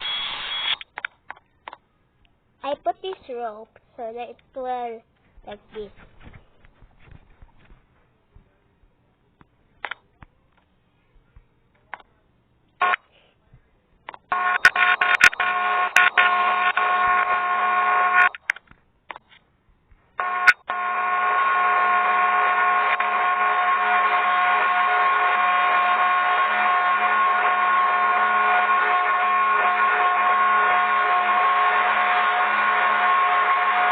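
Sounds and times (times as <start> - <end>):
steady buzzing hum: 14.3 - 18.3, 20.2 - 33.9.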